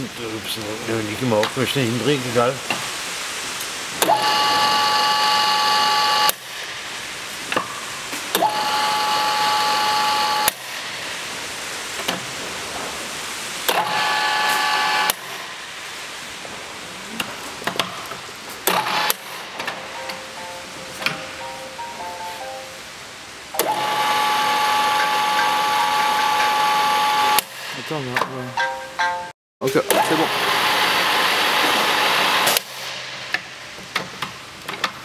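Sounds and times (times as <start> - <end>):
drill gear whine: 4.0 - 6.4, 8.4 - 10.6, 13.7 - 15.4, 23.6 - 27.4.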